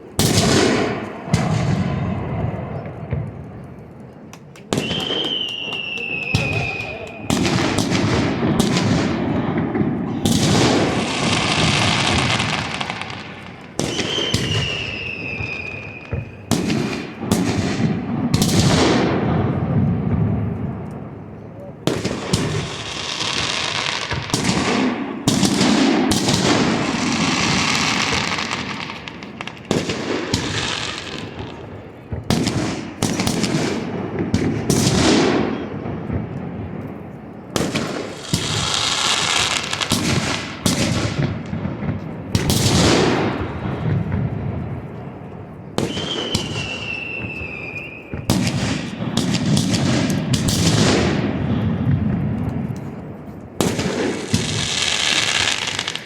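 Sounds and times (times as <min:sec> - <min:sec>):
fireworks bangs: 0:00.0 - 0:56.0
fireworks crackling: 0:00.0 - 0:56.0
falling firework whistle: 0:04.7 - 0:08.1, 0:13.8 - 0:16.5, 0:45.8 - 0:49.2.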